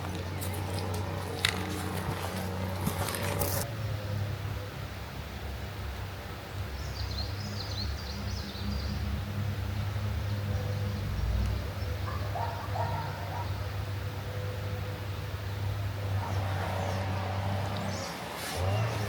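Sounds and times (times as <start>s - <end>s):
small birds chirping: 5.9s - 19.0s.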